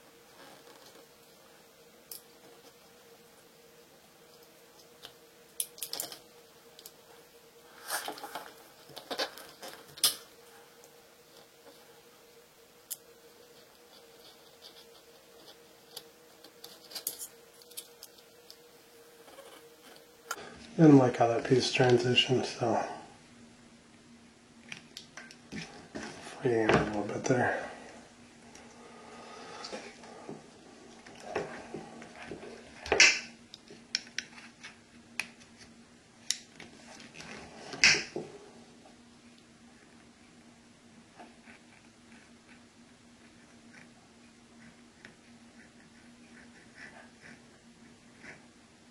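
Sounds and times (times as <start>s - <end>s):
faint steady hum: 0.0s - 48.9s
light scratching on vinyl film: 4.2s - 12.0s, 12.8s - 20.4s.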